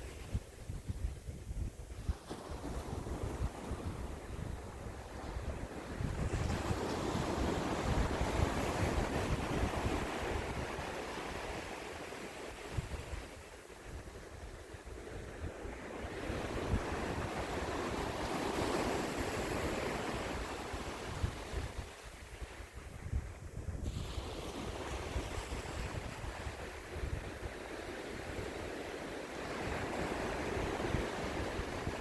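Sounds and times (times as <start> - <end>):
wind rumble on microphone: 0.0 - 32.0
ocean surf washing on shore: 1.8 - 23.0, 23.7 - 32.0.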